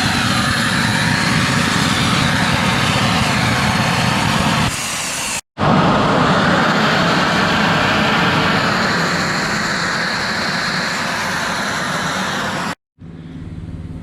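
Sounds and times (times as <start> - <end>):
steam jet hissing: 0.0 - 5.4, 6.4 - 12.8
low machine rumble: 11.2 - 14.0.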